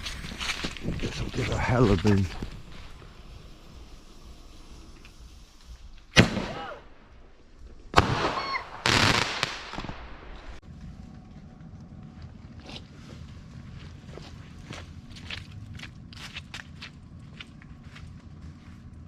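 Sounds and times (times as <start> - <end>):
firework hissing crackle: 2.4 - 6.4, 8.0 - 10.6
firework bangs: 6.1 - 7.0, 7.9 - 10.6
firework whistle: 8.1 - 9.2.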